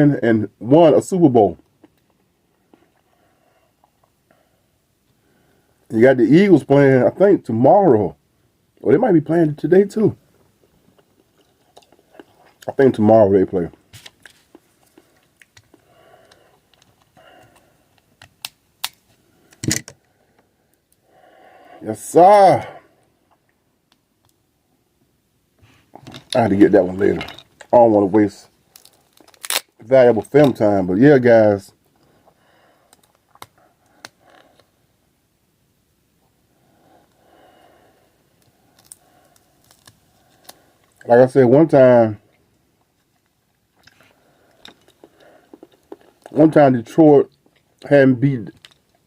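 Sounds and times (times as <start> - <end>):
soft clicks and mouth noises: 1.6 - 3.1, 13.7 - 21.0, 31.8 - 34.7, 42.3 - 46.4, 48.5 - 49.0
eating crab legs: 10.5 - 21.0, 42.3 - 46.6.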